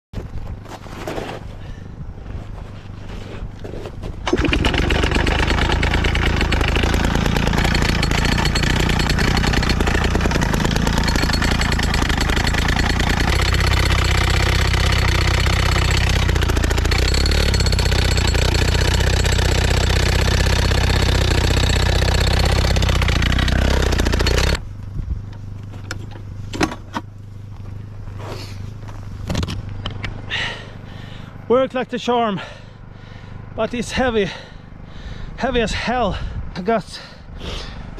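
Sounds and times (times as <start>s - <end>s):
jackhammer breaking ice: 4.3s - 24.6s.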